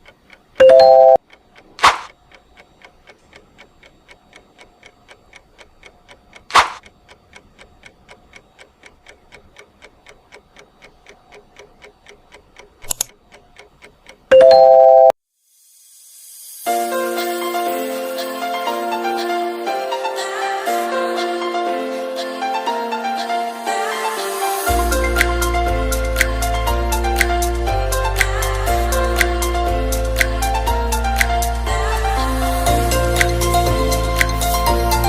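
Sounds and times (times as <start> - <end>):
clock ticking: 0.0 - 15.1, 24.7 - 35.0.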